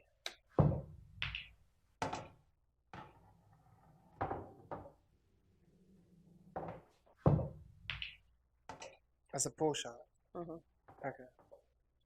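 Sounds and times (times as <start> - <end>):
billiard balls clacking: 3.0 - 5.1.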